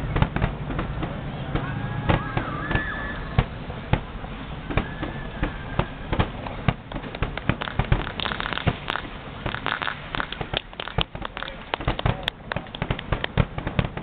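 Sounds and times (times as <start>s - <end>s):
crackling firework bursts: 0.0s - 14.0s
fireworks booming: 0.0s - 14.0s.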